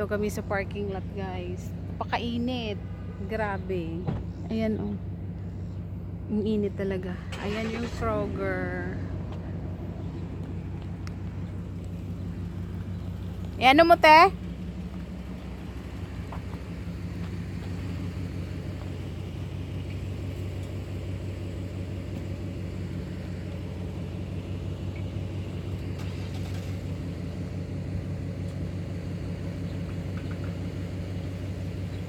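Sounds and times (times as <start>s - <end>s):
car engine and cabin hum: 0.0s - 32.0s.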